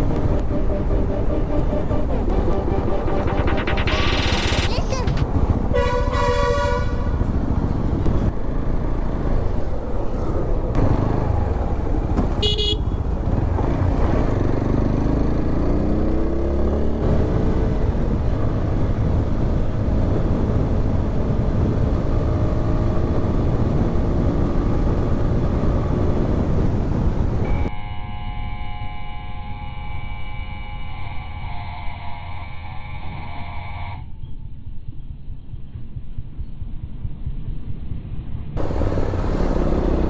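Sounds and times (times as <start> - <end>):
motorcycle engine: 0.0 - 27.7, 38.6 - 40.0
wind and road noise: 0.0 - 27.7, 32.4 - 40.0
horn toot: 5.7 - 7.2, 12.4 - 13.0, 27.4 - 34.0.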